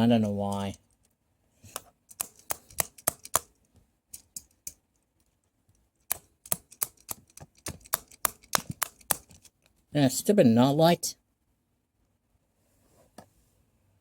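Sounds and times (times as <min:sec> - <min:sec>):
tool tapping plastic remote: 0:01.8 - 0:03.5, 0:06.1 - 0:09.5.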